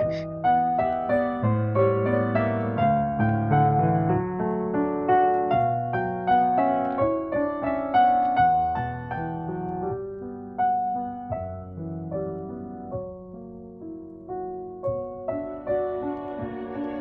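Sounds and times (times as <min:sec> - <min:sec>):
slow piano melody: 0:00.0 - 0:17.0.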